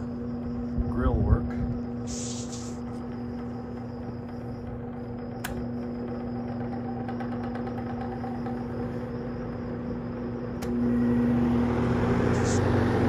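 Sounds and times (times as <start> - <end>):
electric fan motor hum: 0.0 - 13.0
air rushing from fan blades: 0.7 - 3.1.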